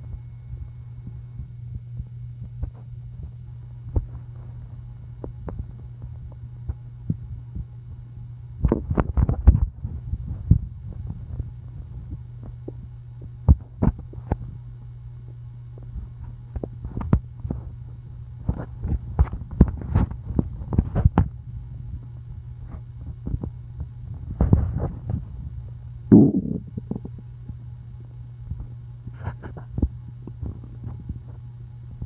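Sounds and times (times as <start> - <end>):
steady low hum: 0.0 - 32.0
stomach growling: 26.1 - 27.1.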